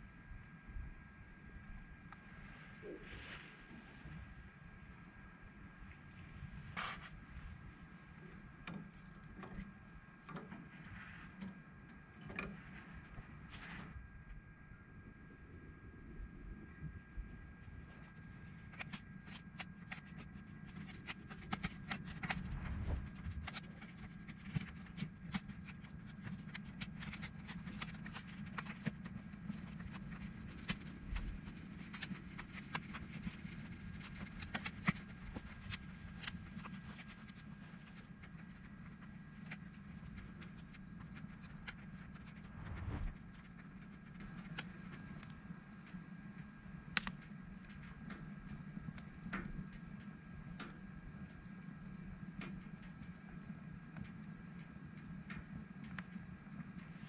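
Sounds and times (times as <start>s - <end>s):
wood fire crackling: 16.7s - 57.0s.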